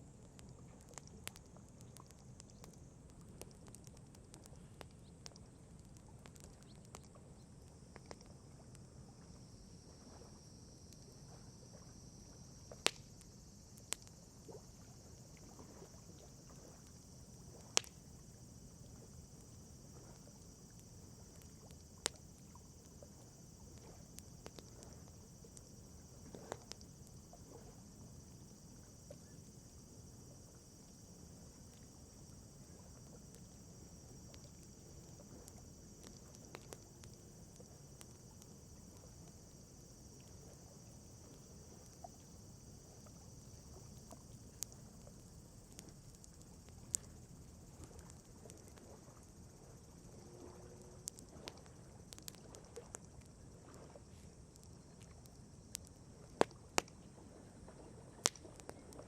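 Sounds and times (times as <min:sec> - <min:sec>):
steady high-pitched hiss: 0:00.0 - 0:59.0
campfire crackling and popping: 0:00.2 - 0:08.8, 0:12.7 - 0:14.2, 0:16.8 - 0:18.1, 0:19.3 - 0:27.2, 0:31.6 - 0:39.5, 0:51.0 - 0:53.2, 0:58.2 - 0:58.8.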